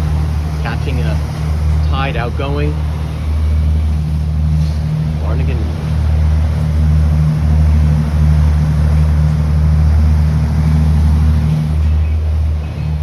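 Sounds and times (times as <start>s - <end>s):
boat engine droning: 0.0s - 13.0s
rushing water: 0.0s - 13.0s
wind noise: 0.0s - 13.0s.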